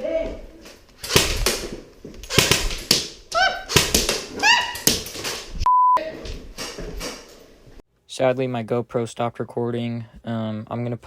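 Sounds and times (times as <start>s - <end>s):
person shouting: 0.0s - 0.4s
censor bleep: 5.7s - 6.0s.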